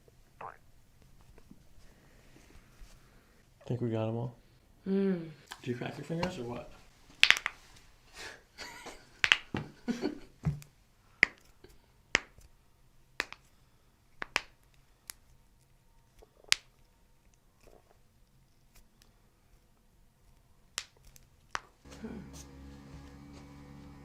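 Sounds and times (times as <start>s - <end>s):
knuckles cracking: 7.2s - 7.6s, 9.2s - 9.7s, 10.5s - 12.5s, 13.2s - 15.4s, 16.1s - 18.0s, 20.7s - 21.8s.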